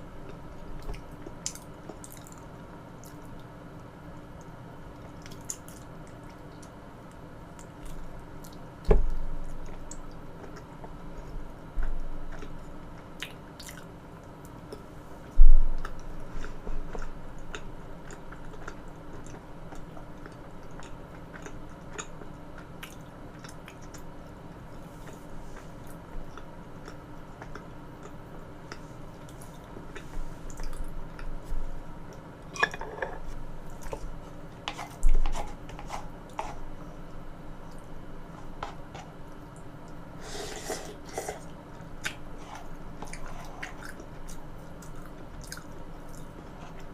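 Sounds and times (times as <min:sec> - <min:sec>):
wet chewing: 0:41.0 - 0:46.9.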